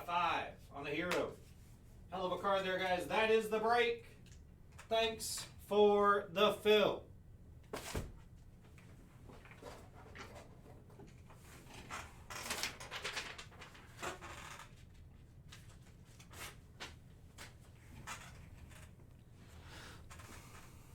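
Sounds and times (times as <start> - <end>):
rustling and scraping: 7.8 - 20.9.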